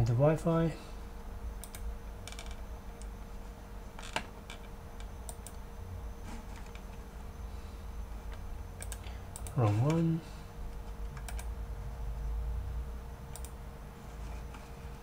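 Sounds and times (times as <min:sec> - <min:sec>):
faint steady hum: 0:00.0 - 0:15.0
computer keyboard clicks: 0:01.6 - 0:01.9, 0:08.8 - 0:09.6, 0:11.2 - 0:11.5, 0:13.3 - 0:13.6.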